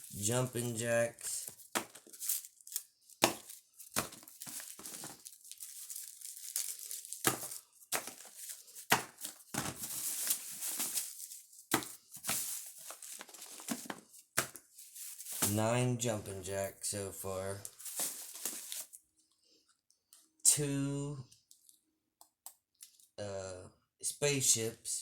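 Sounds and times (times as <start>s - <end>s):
plastic packaging crinkling: 0.0s - 15.6s, 17.6s - 19.0s.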